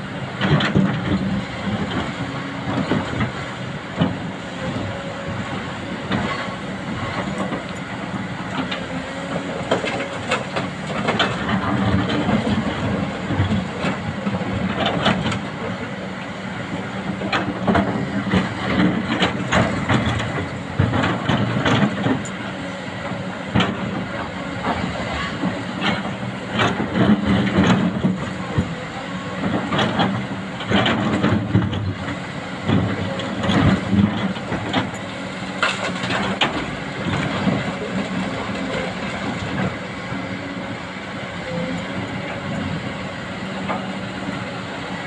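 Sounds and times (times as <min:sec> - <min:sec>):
excavator diesel engine running: 0:00.0 - 0:45.0
metallic clanks and knocks: 0:35.6 - 0:38.0.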